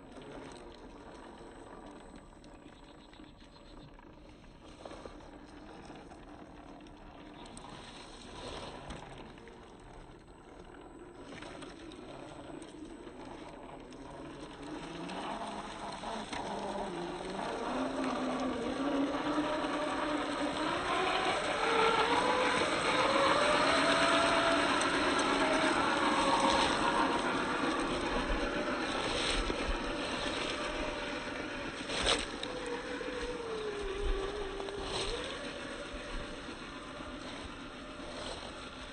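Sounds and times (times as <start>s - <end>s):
electric motor whining: 8.4s - 38.9s.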